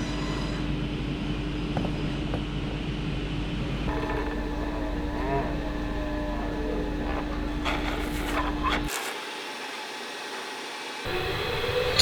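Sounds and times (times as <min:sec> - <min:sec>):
scraping and whining of wood: 0:03.9 - 0:12.0
woodworking machine humming: 0:03.9 - 0:12.0.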